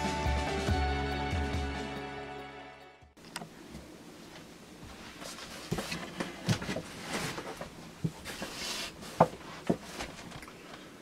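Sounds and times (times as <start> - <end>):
soft handling knocks and rustles: 3.8 - 10.8.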